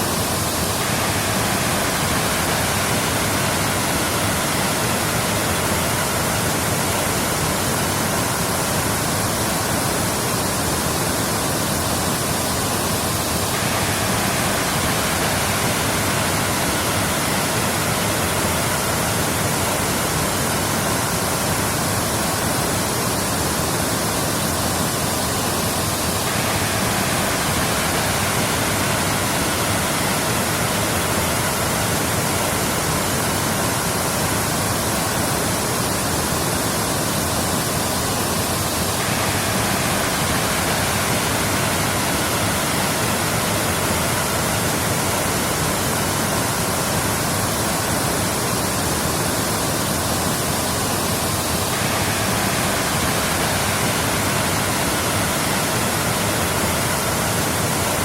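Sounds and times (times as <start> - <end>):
waterfall rushing: 0.0 - 58.0.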